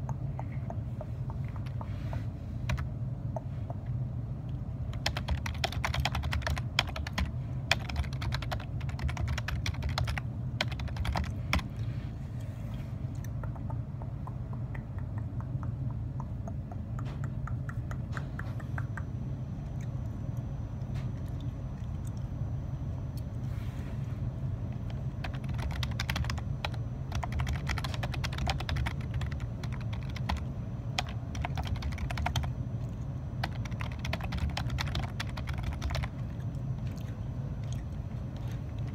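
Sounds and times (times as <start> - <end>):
steady low hum: 0.0 - 38.9
typing on computer keyboard: 4.9 - 11.7, 24.9 - 32.6, 33.4 - 36.2.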